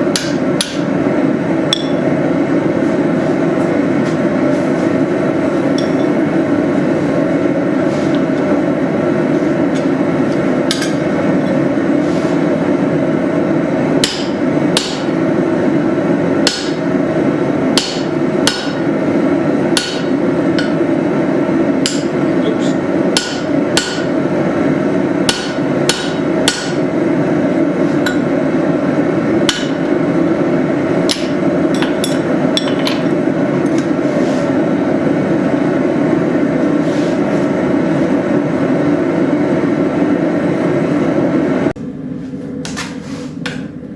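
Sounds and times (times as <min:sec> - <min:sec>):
hammer striking metal: 0:00.1 - 0:00.9, 0:01.7 - 0:02.1, 0:10.6 - 0:11.1, 0:14.0 - 0:15.1, 0:16.4 - 0:16.8, 0:17.7 - 0:18.8, 0:19.7 - 0:20.8, 0:21.8 - 0:24.1, 0:25.2 - 0:26.8, 0:29.4 - 0:29.9.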